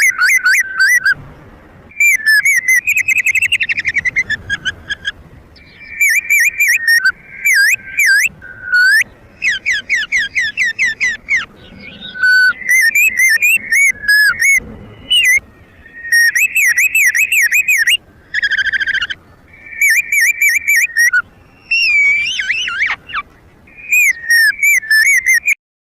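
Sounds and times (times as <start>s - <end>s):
whistled warbling bird call: 0.0s - 1.2s, 1.9s - 25.6s.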